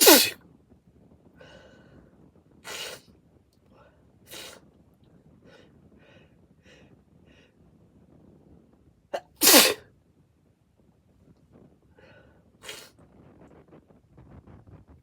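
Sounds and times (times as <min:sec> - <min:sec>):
person sneezing: 0:00.0 - 0:00.4, 0:09.2 - 0:09.8.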